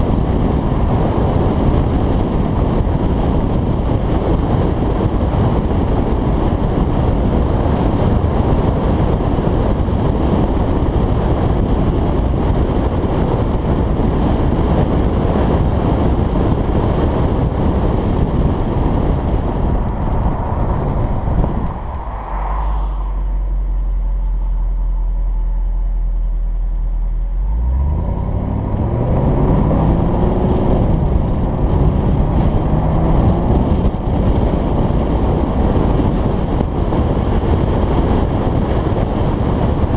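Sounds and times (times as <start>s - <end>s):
car engine accelerating: 0.0s - 39.9s
wind and road noise: 0.0s - 39.9s
car engine idling: 17.8s - 29.0s.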